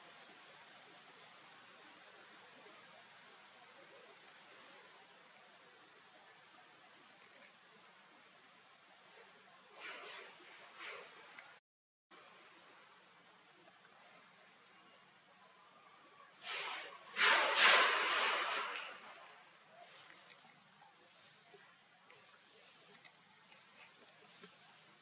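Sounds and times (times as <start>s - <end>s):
steady outdoor hiss: 0.0s - 25.0s
small bird chirping: 2.7s - 8.5s, 19.9s - 25.0s.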